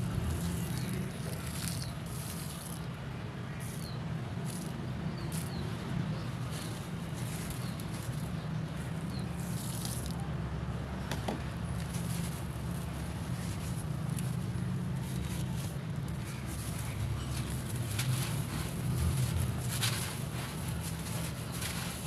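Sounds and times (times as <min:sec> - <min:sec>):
concrete crunching and crackling: 0:00.0 - 0:03.0, 0:11.1 - 0:22.0.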